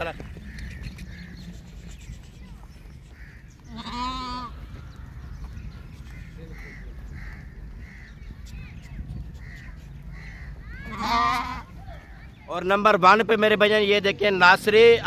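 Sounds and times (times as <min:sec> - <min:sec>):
faint calls: 0:00.2 - 0:12.5
sheep bleating: 0:03.7 - 0:04.5, 0:10.8 - 0:11.7.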